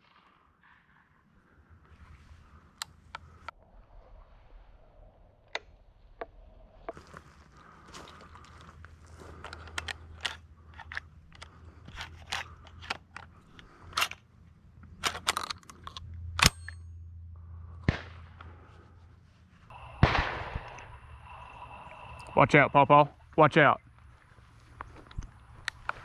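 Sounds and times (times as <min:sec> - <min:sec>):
camera handling clicks and crunches: 0:08.0 - 0:16.5, 0:24.4 - 0:26.0
sharp cracks: 0:17.8 - 0:18.9, 0:19.7 - 0:26.0
shotgun bang with ringing tail: 0:17.9 - 0:18.3, 0:19.9 - 0:21.0.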